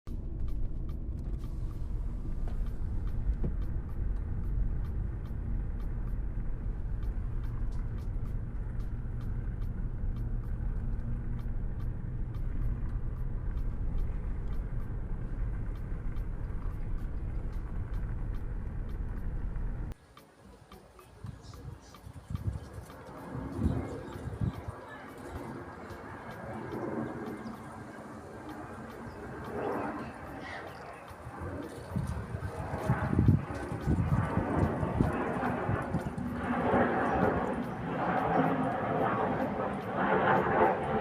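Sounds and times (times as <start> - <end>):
car road and engine rumble: 0.1 - 20.0.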